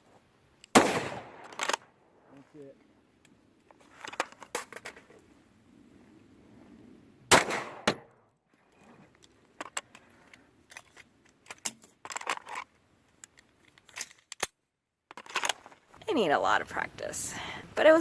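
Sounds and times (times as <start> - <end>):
gunshot crack: 0.7 - 1.6, 7.3 - 8.1
small clicks and knocks: 8.7 - 16.0.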